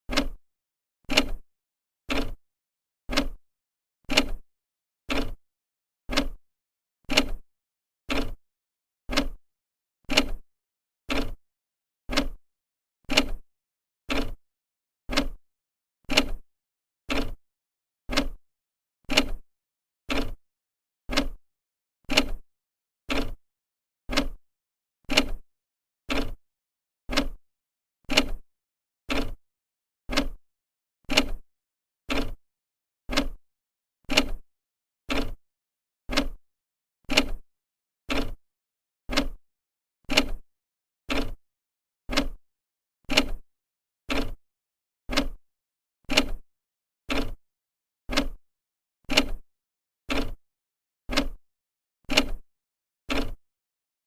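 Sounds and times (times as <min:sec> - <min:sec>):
clock ticking: 0:00.1 - 0:00.4, 0:33.1 - 0:33.4, 0:35.1 - 0:35.4, 0:36.1 - 0:36.4, 0:38.1 - 0:38.4, 0:39.1 - 0:39.4, 0:41.1 - 0:41.4, 0:42.1 - 0:42.4, 0:44.1 - 0:44.4, 0:45.1 - 0:45.4, 0:48.1 - 0:48.4, 0:50.1 - 0:50.4, 0:51.1 - 0:51.4.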